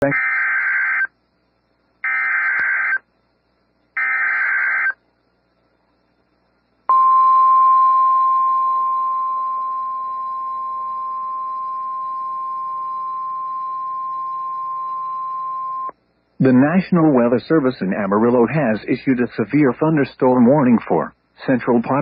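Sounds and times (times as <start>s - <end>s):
steady high alarm tone: 6.9s - 15.9s.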